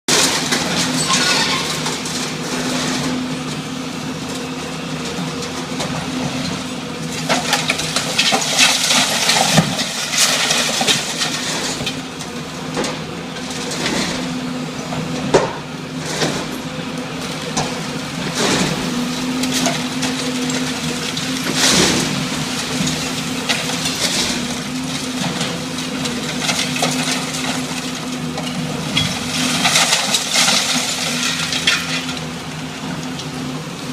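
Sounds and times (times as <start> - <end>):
structure cracking and crashing: 0.1 - 3.2, 7.1 - 12.0, 17.6 - 32.3
heavy machine engine running: 0.1 - 33.9.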